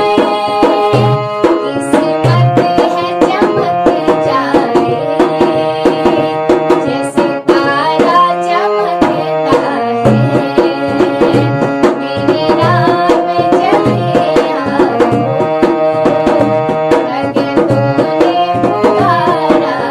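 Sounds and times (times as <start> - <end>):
tabla playing steady rhythm: 0.0 - 19.9.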